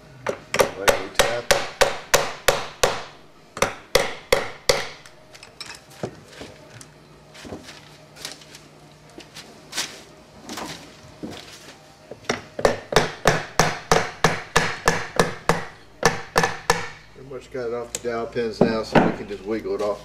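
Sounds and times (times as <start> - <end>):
hammer tapping on metal: 0.2 - 5.1, 12.3 - 17.0.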